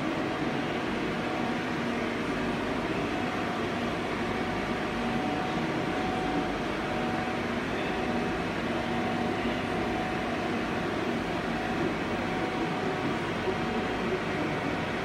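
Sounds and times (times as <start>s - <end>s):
lathe humming and whining: 0.0s - 15.0s.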